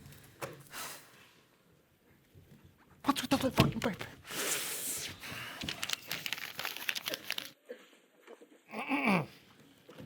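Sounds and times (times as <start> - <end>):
paper rustling and crinkling: 5.4 - 7.6.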